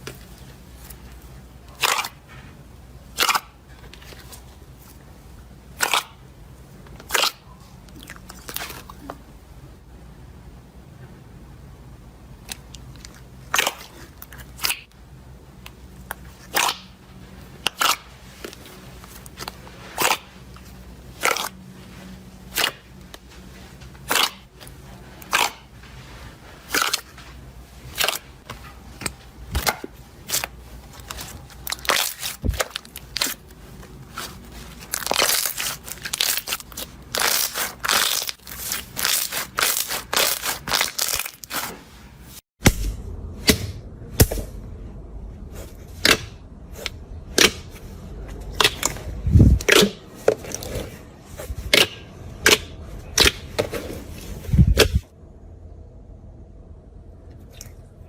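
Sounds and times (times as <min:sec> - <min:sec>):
crunchy slime crackling: 0:01.7 - 0:02.2, 0:03.1 - 0:05.0, 0:05.7 - 0:06.2, 0:07.0 - 0:09.1, 0:12.4 - 0:14.9, 0:16.1 - 0:42.0.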